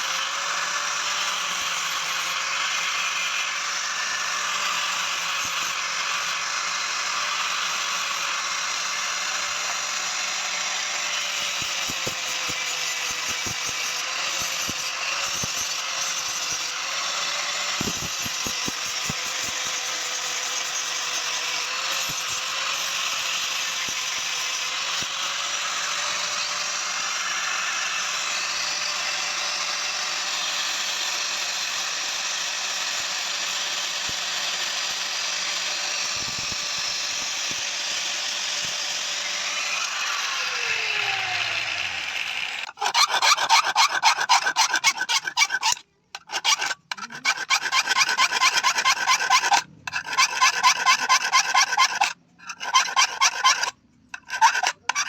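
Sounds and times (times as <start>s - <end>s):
power tool grinding steel: 0.0s - 55.0s
hand filing on steel: 42.7s - 55.0s.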